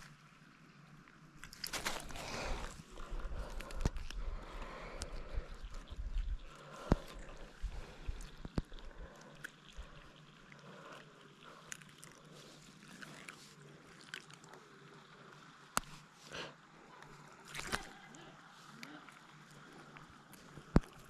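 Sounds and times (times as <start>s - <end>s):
faint clicks: 3.4s - 10.6s.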